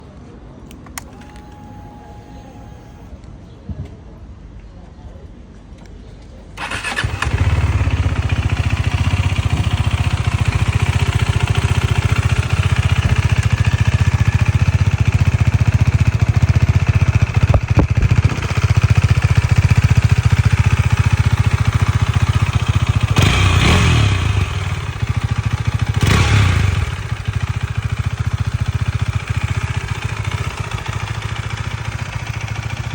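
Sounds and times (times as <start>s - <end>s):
small engine idling and revving: 6.6s - 32.9s.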